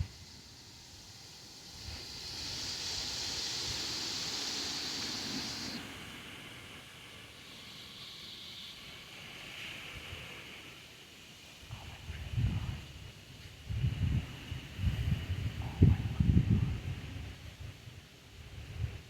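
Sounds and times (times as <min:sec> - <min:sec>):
wind gusting through leaves: 0:00.0 - 0:19.0.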